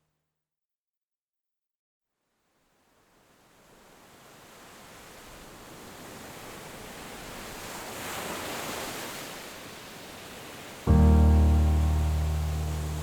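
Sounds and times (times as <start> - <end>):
ocean wave washing in: 10.9 - 13.0.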